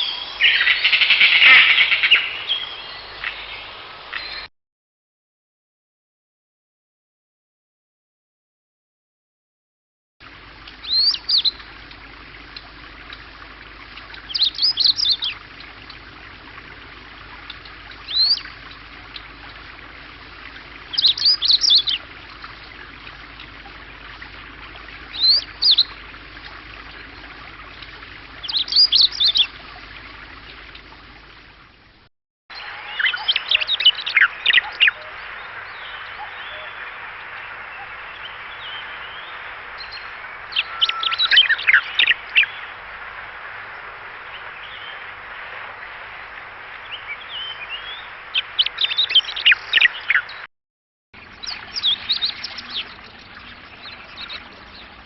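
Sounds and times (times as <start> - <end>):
steady background hiss: 0.0 - 4.5, 10.2 - 50.4
bird singing high-pitched phrases: 10.8 - 11.6, 20.9 - 22.1, 28.4 - 29.6, 32.6 - 36.8, 37.8 - 42.5.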